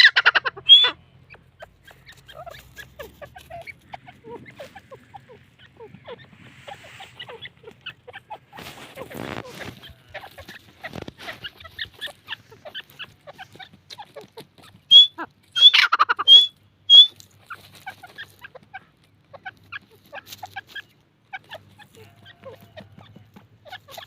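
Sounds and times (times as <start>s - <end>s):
sharp bird call notes: 0.0s - 1.0s, 14.9s - 17.2s
chicks cheeping: 0.0s - 24.0s.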